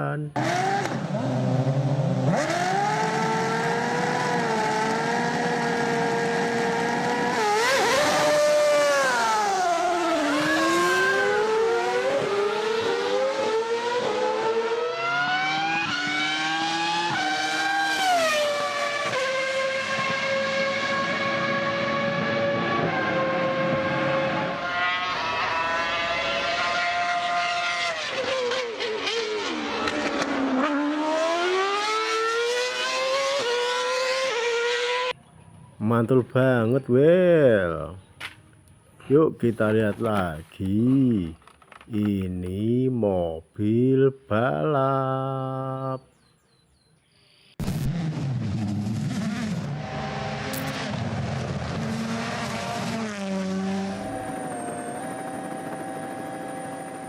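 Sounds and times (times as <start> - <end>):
racing car engine revving: 0.4 - 35.1, 47.6 - 57.0.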